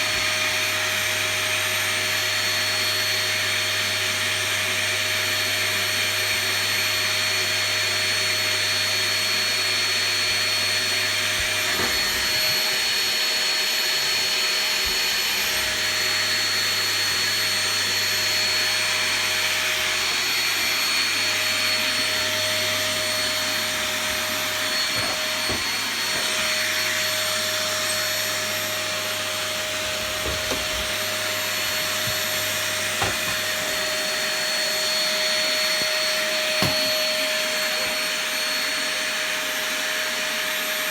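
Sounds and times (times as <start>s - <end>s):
vacuum cleaner whining: 0.0s - 40.9s.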